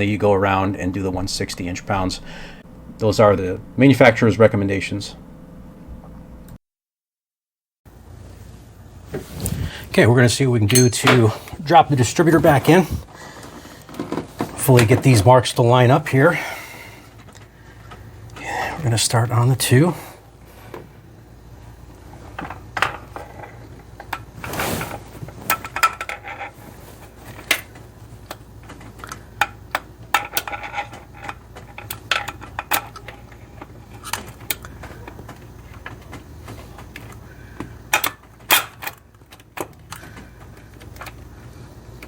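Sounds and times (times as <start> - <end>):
metal tools clinking and knocking: 10.7 - 11.4.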